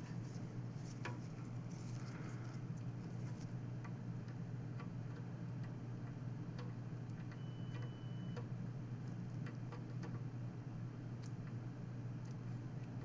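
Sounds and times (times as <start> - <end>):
steady low hum: 0.0 - 7.1.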